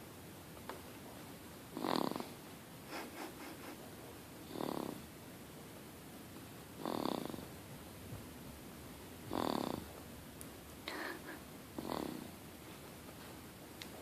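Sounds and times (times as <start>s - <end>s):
baby snoring: 1.8s - 2.4s, 4.5s - 5.0s, 6.8s - 7.4s, 9.3s - 9.9s, 11.8s - 12.3s.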